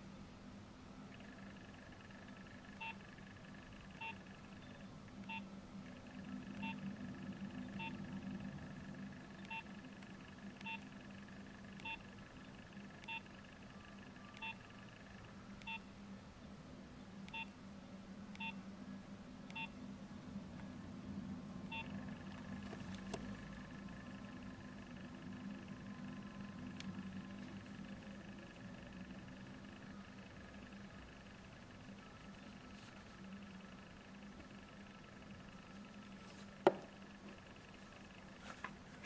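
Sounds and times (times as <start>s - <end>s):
faint low hum: 0.0s - 39.0s
phone electronic beeps: 1.2s - 5.4s, 6.0s - 15.9s, 17.3s - 17.5s, 18.4s - 18.6s, 19.5s - 19.8s, 21.7s - 28.9s.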